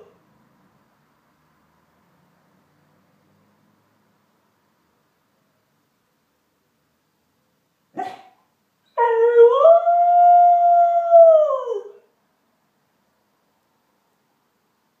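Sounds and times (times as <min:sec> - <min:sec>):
dog barking: 0:07.9 - 0:08.4
dog howling: 0:08.9 - 0:12.0.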